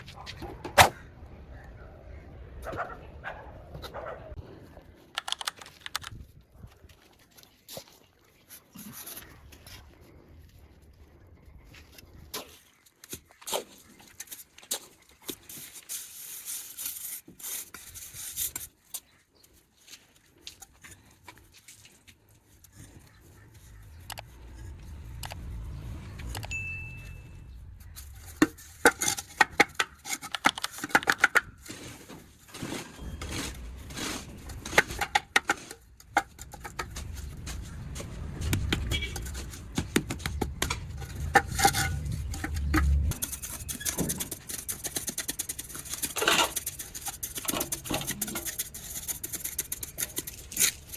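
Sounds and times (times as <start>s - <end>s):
tools scraping: 20.4s - 50.9s
low rumble: 22.6s - 29.8s, 32.6s - 43.8s.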